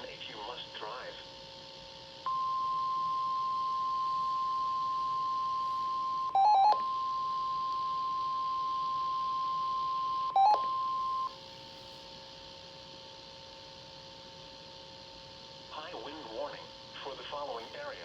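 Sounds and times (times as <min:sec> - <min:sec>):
steady high alarm tone: 0:02.3 - 0:11.4.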